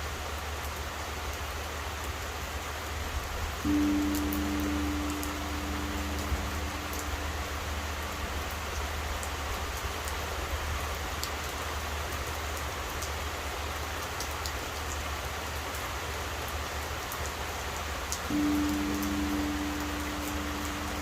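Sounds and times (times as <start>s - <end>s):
steady rain falling: 0.0s - 21.0s.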